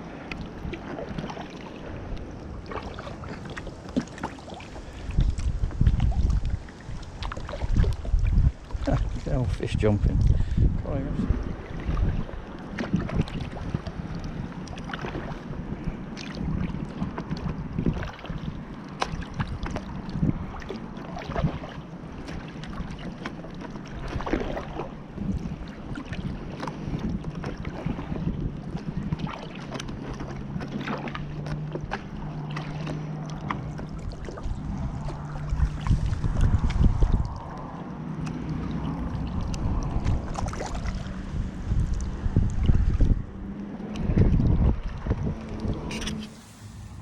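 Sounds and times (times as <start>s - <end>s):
paddle splashing water: 0.0s - 47.0s
low steady hum: 30.2s - 47.0s.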